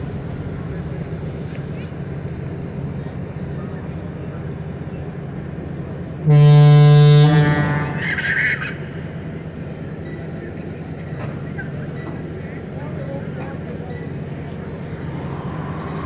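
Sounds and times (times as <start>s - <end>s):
high wheel or brake squeal: 0.0s - 3.8s
stopped train rumbling: 0.0s - 16.0s
train horn blast: 6.2s - 8.6s.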